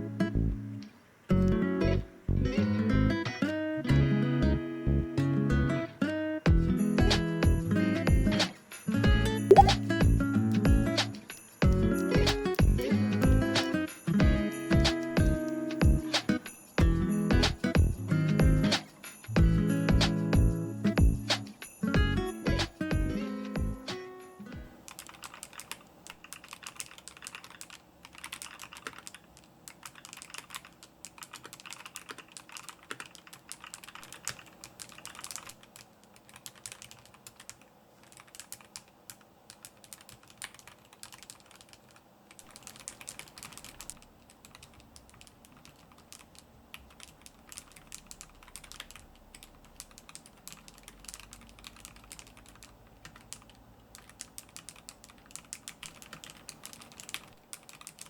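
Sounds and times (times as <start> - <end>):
mechanical keyboard clicks: 24.9 - 58.0.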